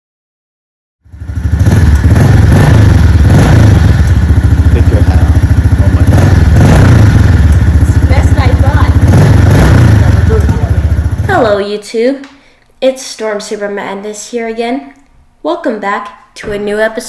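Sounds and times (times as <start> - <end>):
dirt bike engine running: 1.1 - 11.6.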